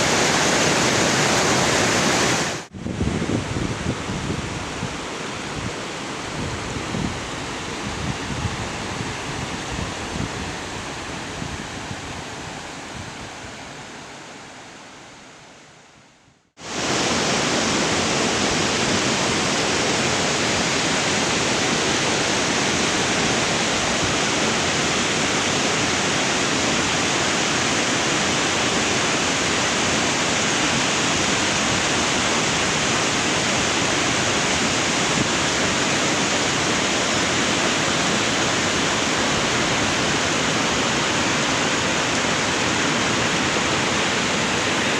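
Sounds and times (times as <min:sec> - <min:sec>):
earlier water sound: 0:00.0 - 0:02.8, 0:16.6 - 0:44.9
rushing falling water: 0:00.0 - 0:15.0, 0:16.6 - 0:44.9.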